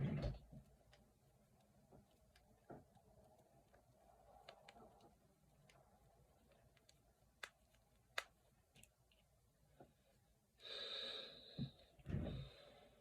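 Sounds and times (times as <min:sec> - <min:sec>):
knuckles cracking: 0:01.6 - 0:09.3
noisy breath: 0:10.6 - 0:13.0.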